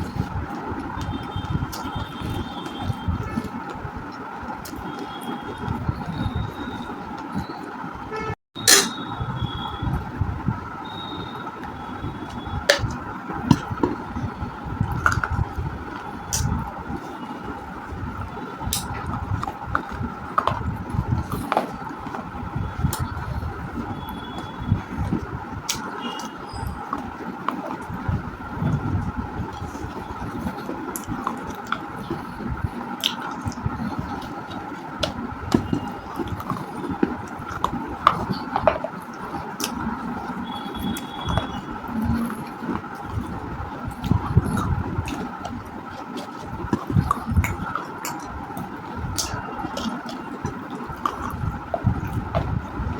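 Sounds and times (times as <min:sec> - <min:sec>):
background traffic noise: 0:00.0 - 0:52.9
mouth noise: 0:08.2 - 0:09.8, 0:39.6 - 0:45.4
crunching of chewing baked clay: 0:28.7 - 0:52.5.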